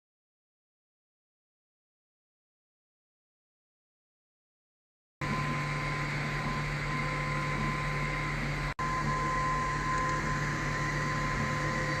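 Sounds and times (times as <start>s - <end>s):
mechanical hum with whine: 5.2s - 12.0s.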